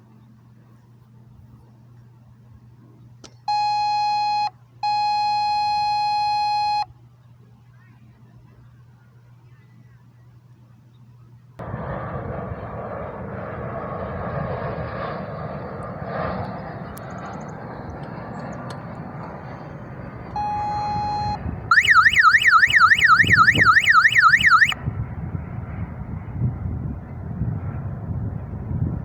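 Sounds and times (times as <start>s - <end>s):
warbling alarm siren: 3.5s - 6.8s, 20.3s - 24.8s
bike alarm warning beep: 3.5s - 6.9s, 20.4s - 24.8s
wind buffeting microphone: 24.8s - 29.0s.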